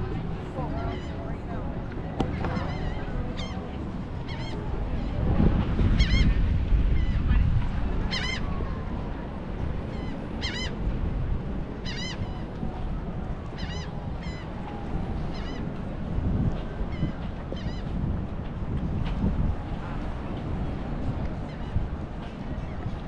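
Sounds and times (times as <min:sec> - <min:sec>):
gulls calling: 0:00.0 - 0:05.2, 0:05.8 - 0:09.2, 0:09.8 - 0:10.9, 0:11.8 - 0:12.7, 0:13.4 - 0:15.8, 0:16.9 - 0:18.0
wind and surf rushing: 0:00.0 - 0:23.0.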